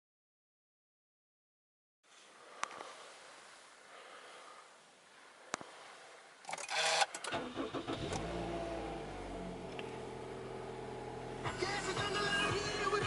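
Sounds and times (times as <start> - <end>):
engine starter cranking: 6.5 - 10.2
car engine idling: 7.3 - 13.0
click: 9.7 - 10.0.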